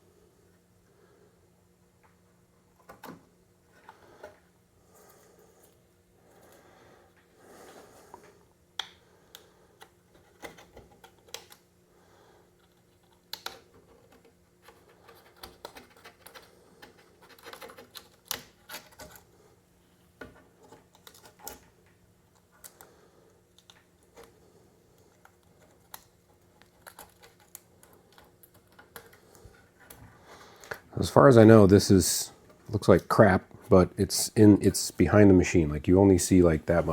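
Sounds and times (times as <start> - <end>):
faint clicks taps and scrapes: 12.5 - 19.4, 20.1 - 30.9.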